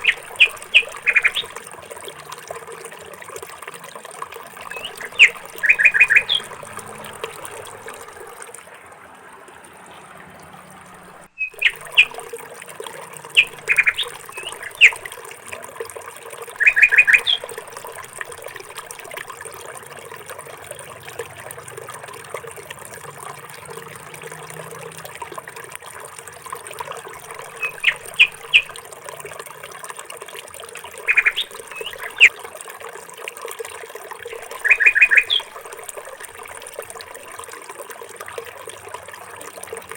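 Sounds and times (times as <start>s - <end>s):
small birds chirping: 0.0s - 1.6s, 4.6s - 8.2s, 9.9s - 15.1s, 16.5s - 18.6s, 27.2s - 28.8s, 30.9s - 32.3s, 34.2s - 35.6s
running water: 0.0s - 39.9s.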